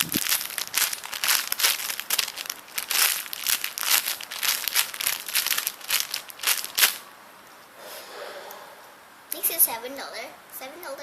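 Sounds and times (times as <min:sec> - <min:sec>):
plastic wrapper crinkling: 0:00.0 - 0:07.0.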